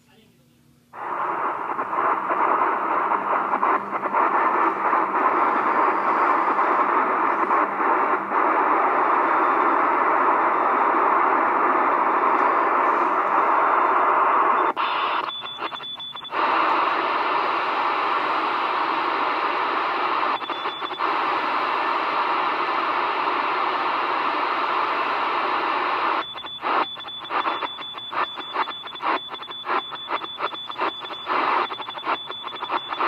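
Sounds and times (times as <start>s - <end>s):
radio static hiss: 0.9s - 33.0s
fast morse code tone: 14.5s - 17.0s, 19.9s - 21.3s, 25.9s - 33.0s.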